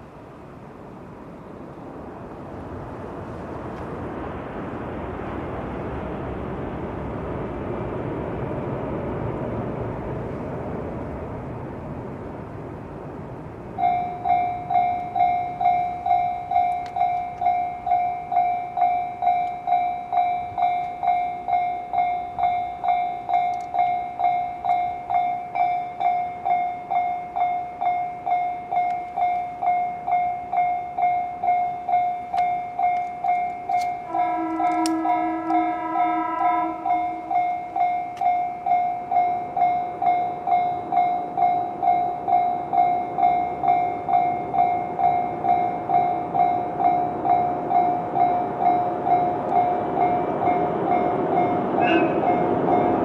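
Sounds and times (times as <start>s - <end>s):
electric train passing: 0.0s - 53.0s
level crossing bell clanging: 13.8s - 53.0s.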